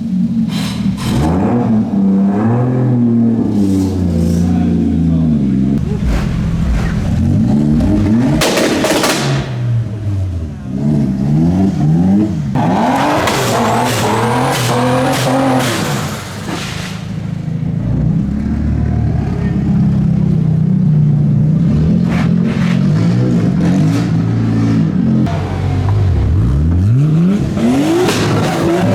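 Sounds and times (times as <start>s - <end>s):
car engines revving: 5.8s - 16.6s, 25.3s - 28.9s.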